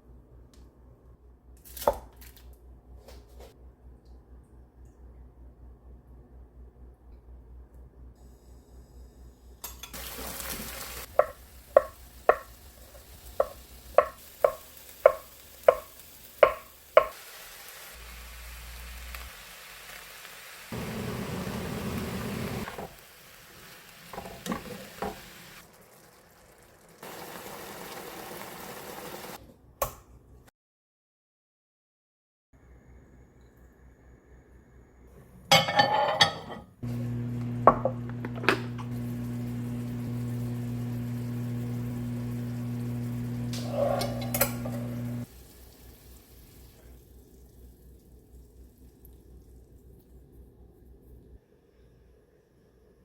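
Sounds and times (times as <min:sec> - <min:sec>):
food sizzling in a pan: 0:09.7 - 0:29.4, 0:36.8 - 0:48.9
utensil knocking: 0:11.1 - 0:12.5, 0:13.4 - 0:17.2.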